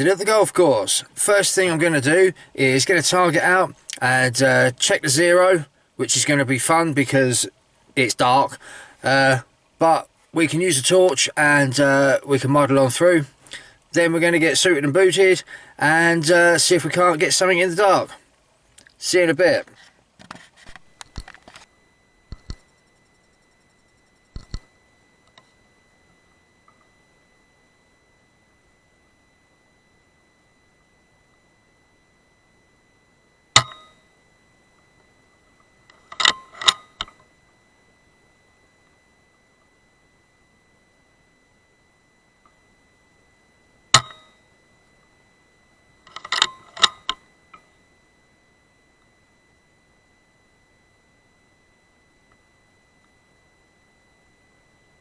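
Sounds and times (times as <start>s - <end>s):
small clicks: 24.3s - 25.5s.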